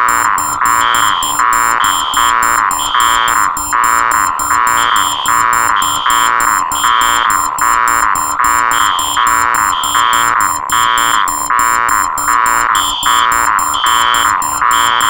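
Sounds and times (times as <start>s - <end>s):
cluster of alarm tones: 0.0s - 15.0s
higher alarm beep: 0.0s - 15.0s
rapid high-pitched pipping: 0.0s - 15.0s.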